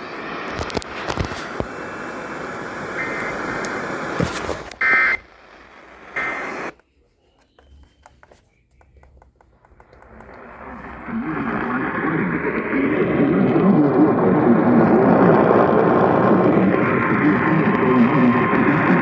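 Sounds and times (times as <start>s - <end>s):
hissing radio static: 0.0s - 6.8s, 9.9s - 19.0s
faint clicks: 6.2s - 10.8s.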